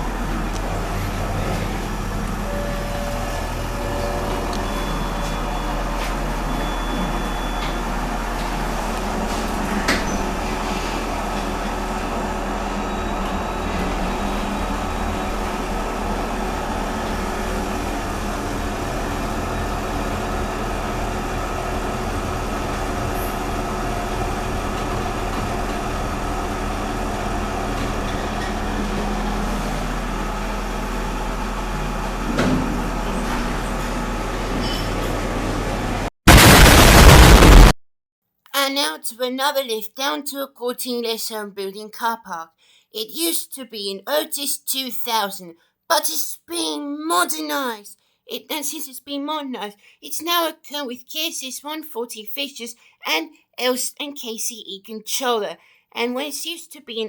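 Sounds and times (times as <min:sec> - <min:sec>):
lift car running hum: 0:00.0 - 0:36.1.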